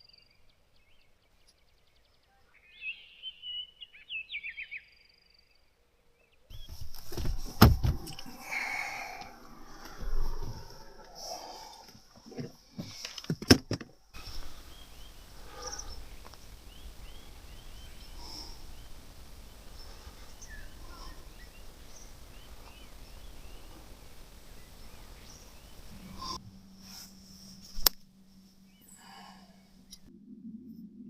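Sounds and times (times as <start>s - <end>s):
small birds chirping: 0.0s - 13.2s, 14.0s - 30.1s
low rumble: 6.6s - 12.2s, 14.2s - 31.0s
sharp knocks: 6.7s - 8.2s.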